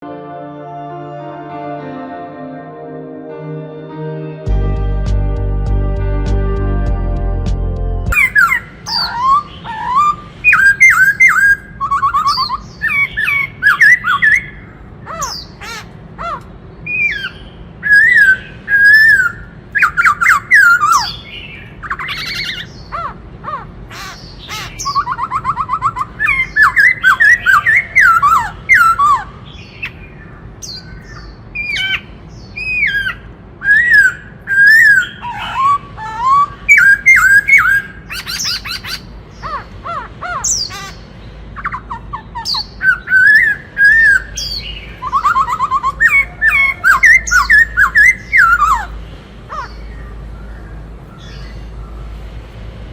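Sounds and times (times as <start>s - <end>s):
bird whistled song: 8.1s - 14.6s, 16.9s - 23.0s, 24.2s - 41.0s, 41.6s - 48.9s.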